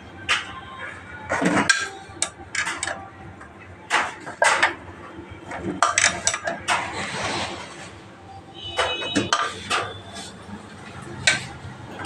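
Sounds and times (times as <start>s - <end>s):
metal scraping: 5.4s - 12.0s.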